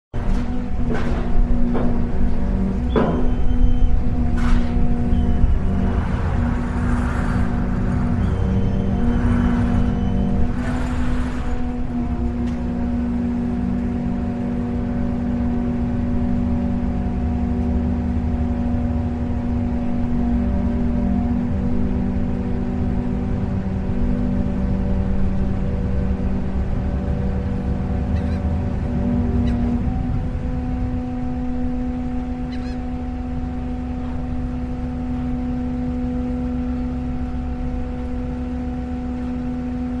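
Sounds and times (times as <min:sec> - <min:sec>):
boat engine running: 0:00.1 - 0:40.0.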